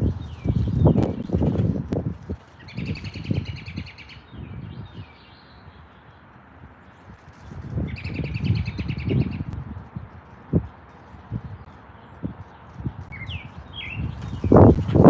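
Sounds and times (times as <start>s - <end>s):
low rumbling bumps: 14.0s - 15.0s.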